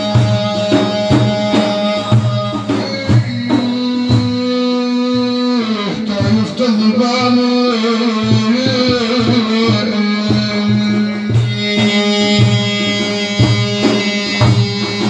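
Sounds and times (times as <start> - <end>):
steady drum beat: 0.0 - 15.0
long held melody line: 6.0 - 15.0.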